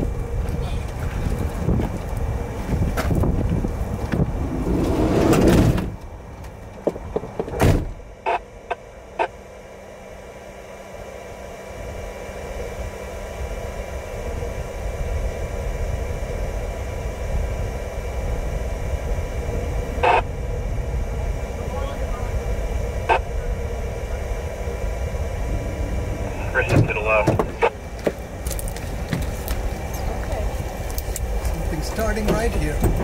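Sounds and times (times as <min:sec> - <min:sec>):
wind noise on microphone: 0:00.0 - 0:06.0, 0:14.2 - 0:33.0
steady low rumble: 0:00.0 - 0:33.0
single thump: 0:07.4 - 0:08.0.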